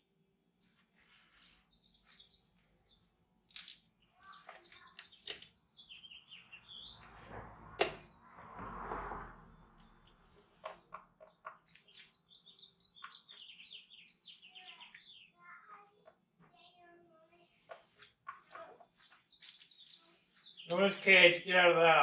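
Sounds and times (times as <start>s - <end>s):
birds chirping: 1.3s - 8.5s, 9.2s - 22.0s
rushing noise: 7.0s - 10.2s.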